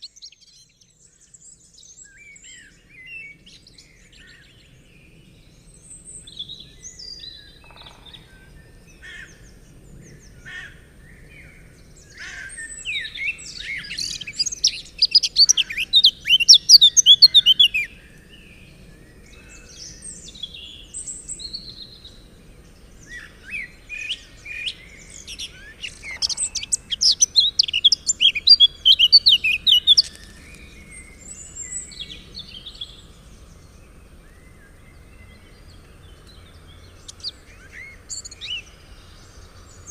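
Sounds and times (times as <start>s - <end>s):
bird chirps and calls: 12.1s - 17.9s, 23.0s - 33.2s, 34.7s - 39.9s
songbirds singing rapid high notes: 12.1s - 18.0s, 19.8s - 39.9s.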